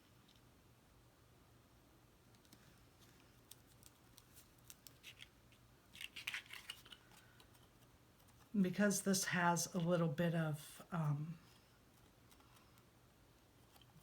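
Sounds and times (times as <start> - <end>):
cardstock pieces clicking and crinkling: 2.4 - 8.4.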